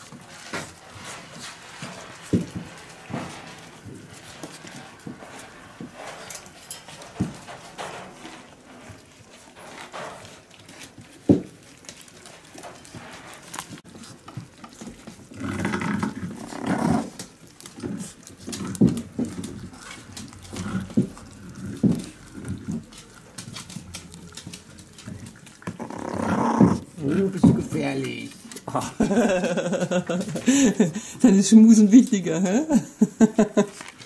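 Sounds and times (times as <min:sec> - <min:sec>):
puppies squeaking and growling: 0:11.6 - 0:27.3.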